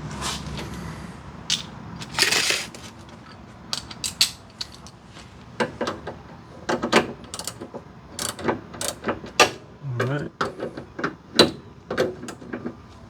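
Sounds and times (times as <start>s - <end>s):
scraping rattle: 2.0s - 5.0s.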